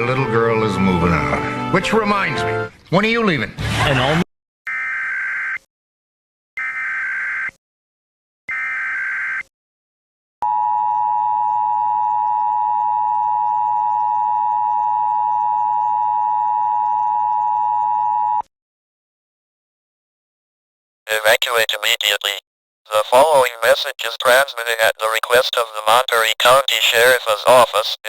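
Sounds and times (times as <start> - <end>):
loud steady dual tone: 10.4 - 18.4.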